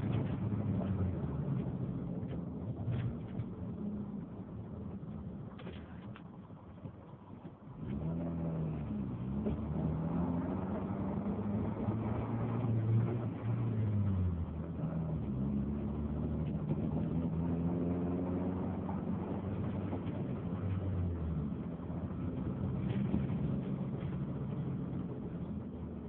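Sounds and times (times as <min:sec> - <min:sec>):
car engine revving: 0:07.7 - 0:26.0.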